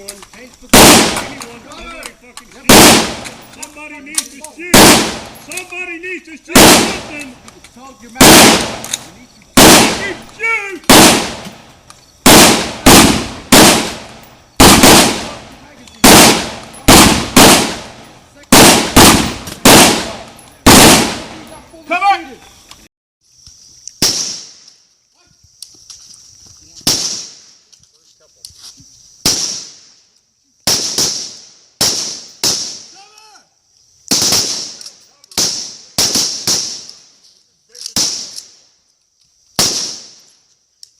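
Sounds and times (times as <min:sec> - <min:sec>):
rifle shots echoing: 0:00.7 - 0:03.6, 0:04.2 - 0:05.6, 0:06.5 - 0:07.4, 0:08.2 - 0:21.5, 0:30.7 - 0:32.9, 0:34.1 - 0:34.8, 0:35.4 - 0:36.9, 0:39.6 - 0:40.2.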